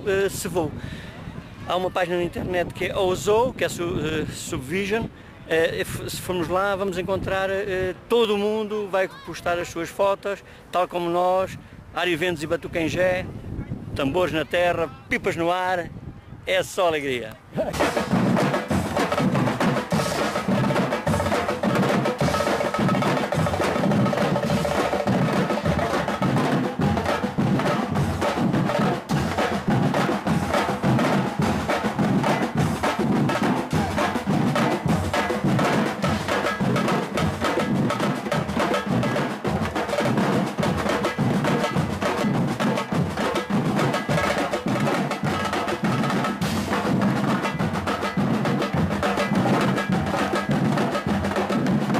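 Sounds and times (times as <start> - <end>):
drums playing fast rhythm: 17.6 - 51.9.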